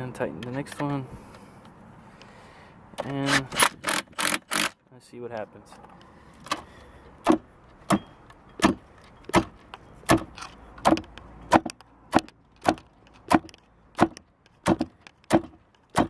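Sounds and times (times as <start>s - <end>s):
hand tool clicking: 3.0s - 4.8s.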